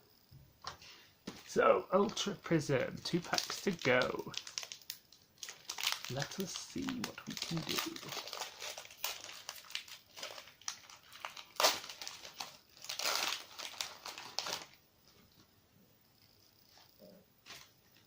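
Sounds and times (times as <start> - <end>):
foil wrapper crinkling: 3.0 - 14.8.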